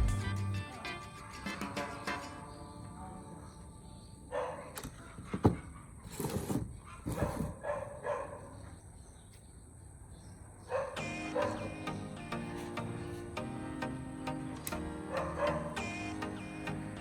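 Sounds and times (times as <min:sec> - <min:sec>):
dog barking: 0:04.3 - 0:06.0, 0:06.8 - 0:08.7, 0:10.7 - 0:11.7, 0:15.1 - 0:15.8.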